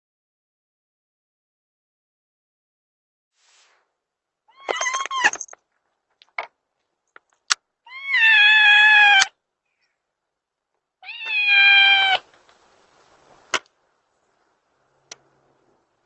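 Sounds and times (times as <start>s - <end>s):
cat meowing: 4.5s - 5.5s, 7.9s - 9.4s, 11.0s - 12.3s.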